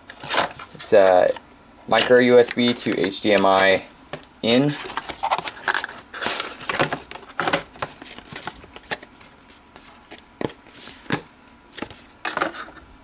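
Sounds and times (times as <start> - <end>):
packaging crinkling and rustling: 0.1 - 3.8, 4.6 - 11.2.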